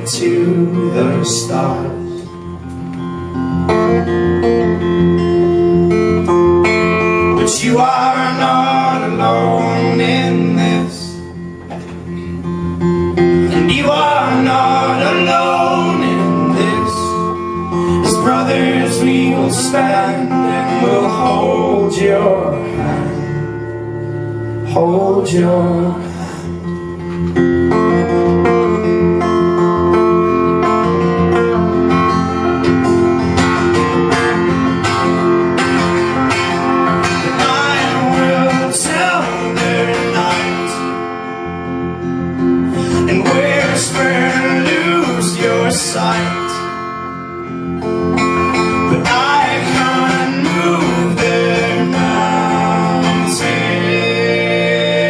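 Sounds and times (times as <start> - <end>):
acoustic guitar strumming: 0.0 - 55.0.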